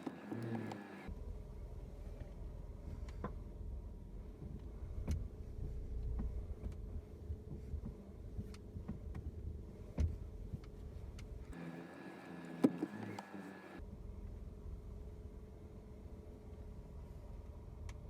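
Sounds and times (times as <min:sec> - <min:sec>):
steady low hum: 0:00.0 - 0:18.0
shock absorber clicks and knocks: 0:04.4 - 0:09.3.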